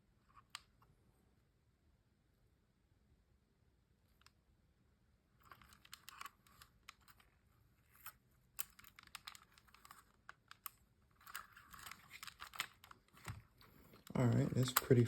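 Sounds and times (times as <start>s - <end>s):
faint plastic clicks: 8.0s - 15.0s.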